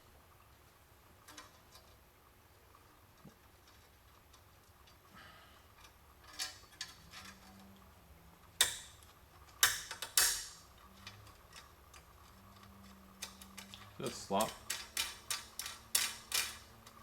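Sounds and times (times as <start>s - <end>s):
metal parts clicking and clinking: 5.8s - 7.8s, 8.5s - 17.0s.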